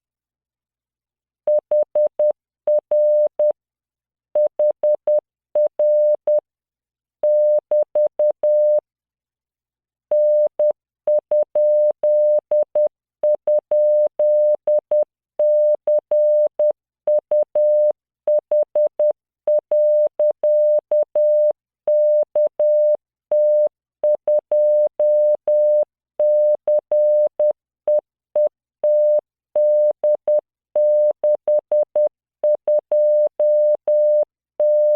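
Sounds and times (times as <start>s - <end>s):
morse code tone: 28.4s - 34.9s.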